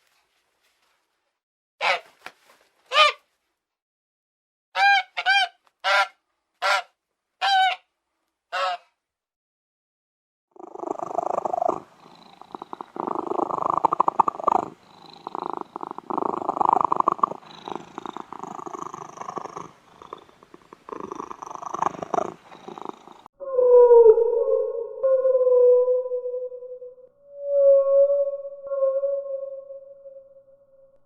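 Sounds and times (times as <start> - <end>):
cat purring: 10.6 - 23.3.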